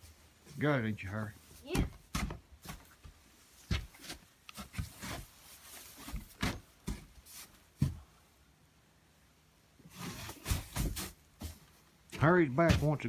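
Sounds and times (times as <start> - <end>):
hay bales rustling: 0.0 - 2.0, 2.6 - 7.8, 9.9 - 13.0
hay bales thumping: 1.5 - 3.0, 10.3 - 13.0.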